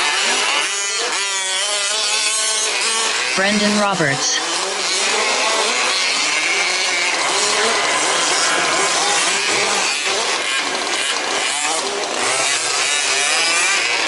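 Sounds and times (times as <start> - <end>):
small two-stroke engines revving: 0.0 - 14.0.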